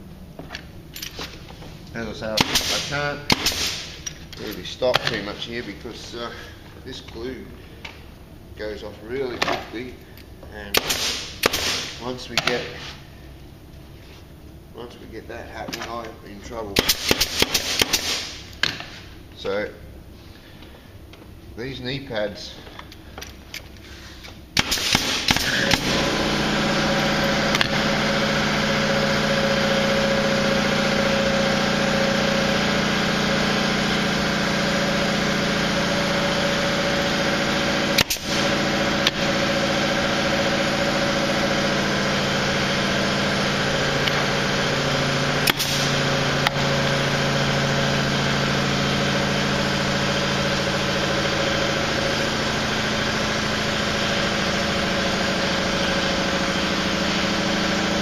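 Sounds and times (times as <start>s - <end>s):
machine motor humming: 24.9s - 58.0s.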